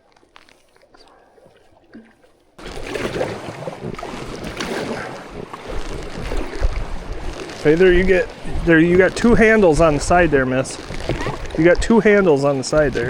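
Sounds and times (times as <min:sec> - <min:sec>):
rushing river water: 0:00.0 - 0:13.0
wind buffeting microphone: 0:03.1 - 0:13.0.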